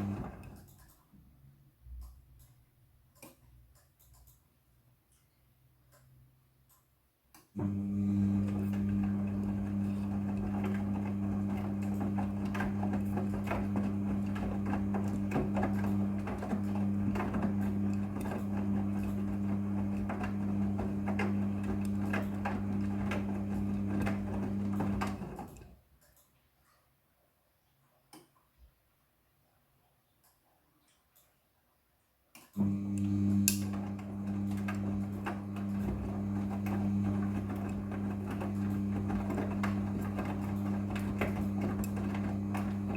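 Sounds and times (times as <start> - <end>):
washing machine humming: 0.0 - 0.7, 7.6 - 25.8, 32.6 - 42.9.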